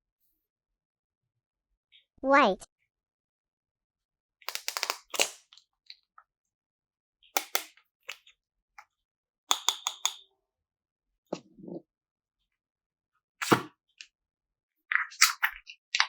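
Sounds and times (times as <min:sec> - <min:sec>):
sharp clicks and crackles: 0:04.5 - 0:05.4.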